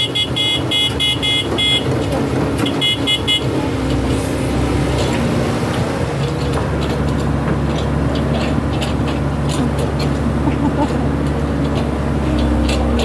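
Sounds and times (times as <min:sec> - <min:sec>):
rapid warning alarm beeps: 0:00.0 - 0:01.9, 0:02.6 - 0:03.6
excavator diesel engine running: 0:00.0 - 0:13.0.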